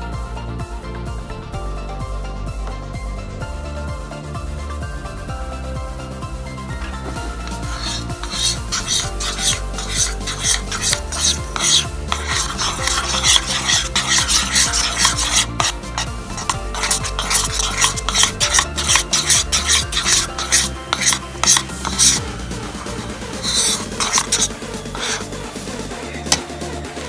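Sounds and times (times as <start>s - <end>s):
glue stirred in a bowl: 6.8s - 25.5s.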